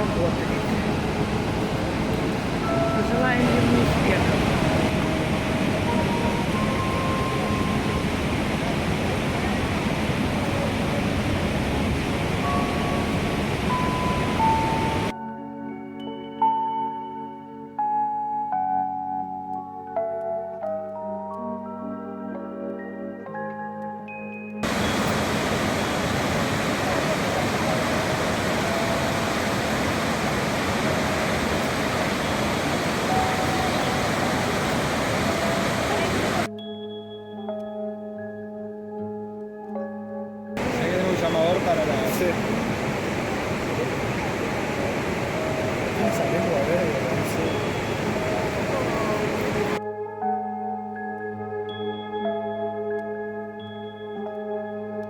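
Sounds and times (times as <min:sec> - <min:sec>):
waterfall roaring: 0:00.0 - 0:15.1, 0:24.6 - 0:36.5, 0:40.6 - 0:49.8
soft music with ringing tones: 0:00.0 - 0:55.0.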